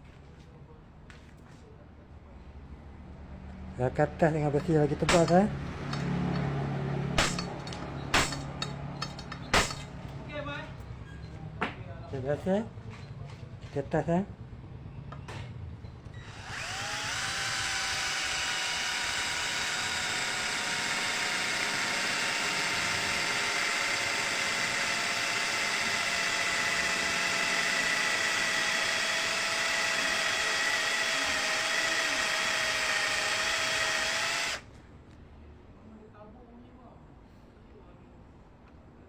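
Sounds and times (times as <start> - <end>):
cordless drill drilling into steel: 16.1 - 34.7.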